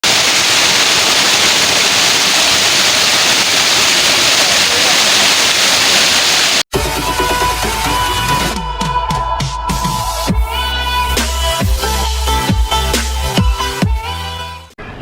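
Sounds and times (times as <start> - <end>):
waterfall rushing: 0.0 - 6.7.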